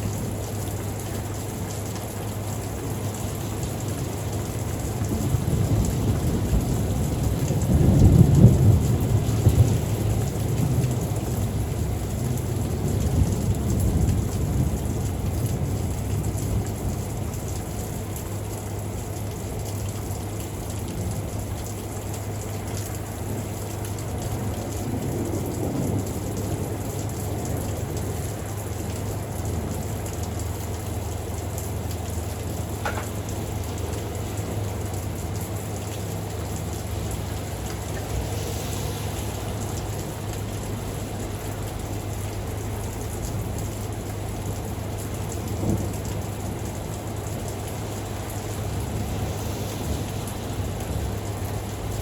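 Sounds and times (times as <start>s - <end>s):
raindrops ticking: 0.0s - 49.3s, 50.0s - 52.0s
steady rain: 0.0s - 52.0s
thunder rumbling: 4.0s - 17.4s.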